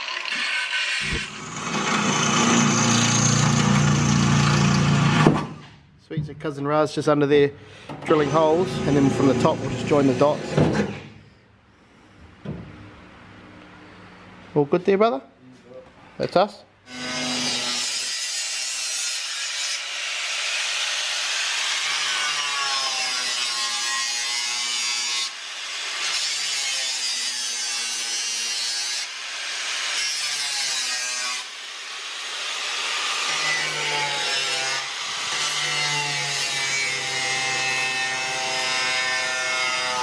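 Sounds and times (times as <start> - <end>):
angle grinder cutting sheet metal: 0.0 - 5.6, 8.1 - 10.8, 16.9 - 40.0.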